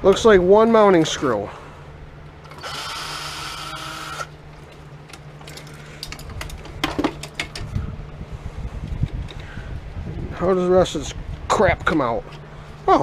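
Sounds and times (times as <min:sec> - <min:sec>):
power drill spinning: 0:02.4 - 0:04.4
small metal parts clinking: 0:04.6 - 0:07.6.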